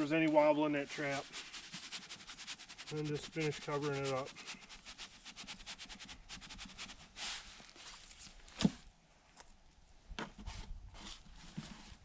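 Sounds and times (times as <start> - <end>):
dirt scraped by hand: 0.0 - 8.9.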